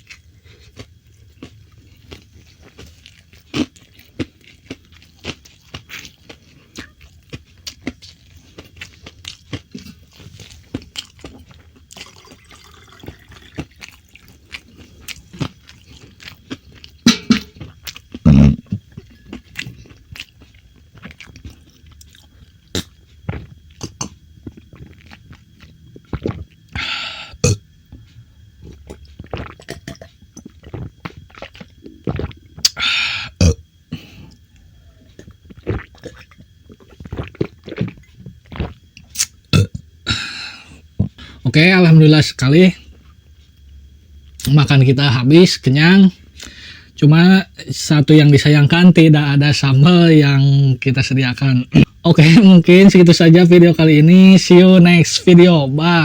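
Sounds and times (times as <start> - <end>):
chewing and crunching food: 0.0 - 32.8, 33.7 - 41.4
wet mouth clicks: 22.0 - 25.2, 28.7 - 32.8, 35.1 - 39.8.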